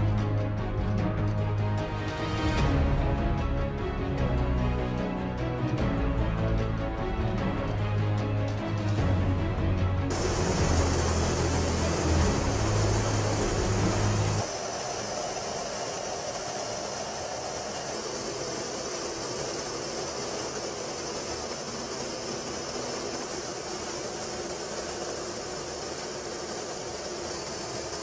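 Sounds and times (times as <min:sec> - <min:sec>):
loud low hum: 0:09.2 - 0:14.5
high whine: 0:10.1 - 0:28.0
jet engine rushing: 0:10.1 - 0:28.0.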